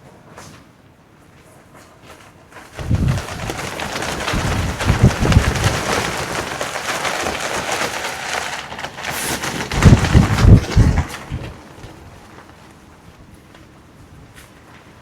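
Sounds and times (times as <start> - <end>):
strong wind gusting on microphone: 2.8 - 8.0, 8.9 - 12.5.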